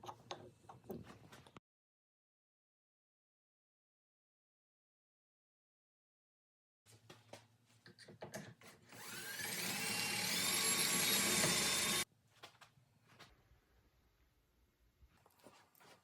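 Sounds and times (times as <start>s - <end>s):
power tool motor whining: 8.9s - 12.0s.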